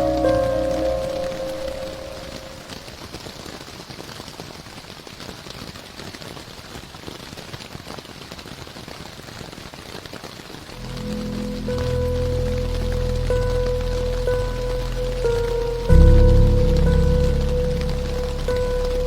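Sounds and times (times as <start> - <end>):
slow ambient music tones: 0.0 - 2.9, 10.8 - 19.0
steady rain hiss: 0.0 - 19.0.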